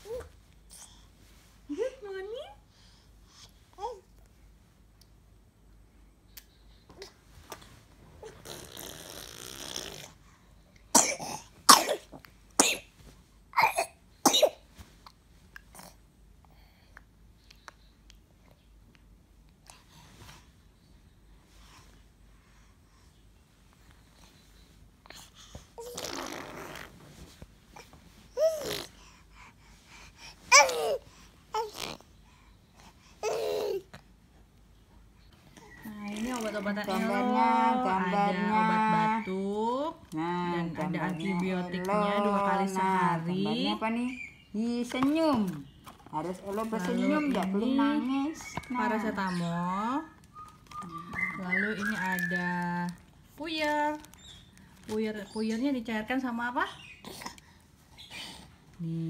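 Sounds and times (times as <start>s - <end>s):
baby coughing: 10.9s - 12.9s, 13.6s - 14.6s, 30.5s - 31.0s
baby babbling: 28.4s - 29.0s, 30.5s - 32.0s, 33.2s - 34.0s.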